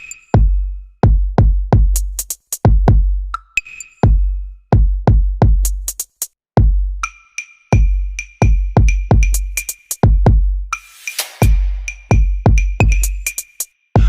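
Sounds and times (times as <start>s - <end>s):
deep kick drums: 0.4s - 3.4s, 4.0s - 6.0s, 6.6s - 7.0s, 7.8s - 9.4s, 10.0s - 10.7s, 11.4s - 13.2s
hi-hat ticks: 10.8s - 13.7s.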